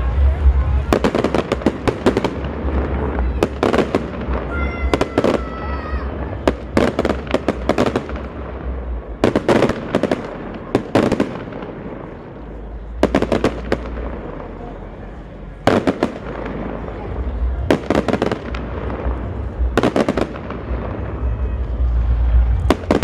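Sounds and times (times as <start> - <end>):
fireworks bangs and crackles: 0.0 - 23.0.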